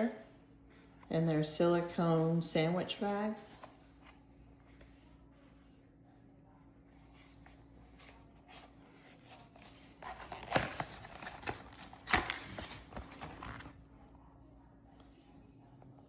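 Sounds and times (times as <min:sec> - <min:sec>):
plastic bags rustling and crinkling: 0:08.6 - 0:13.8.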